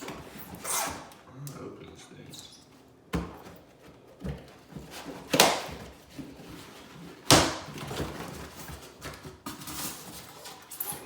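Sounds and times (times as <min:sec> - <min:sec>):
cardboard rustling: 0:03.2 - 0:11.0.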